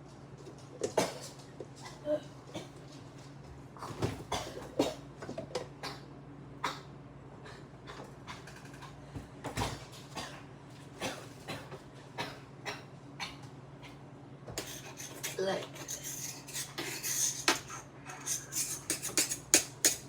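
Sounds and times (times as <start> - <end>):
steady low hum: 0.0 - 20.0
kitchen items knocking and clicking: 18.9 - 20.0.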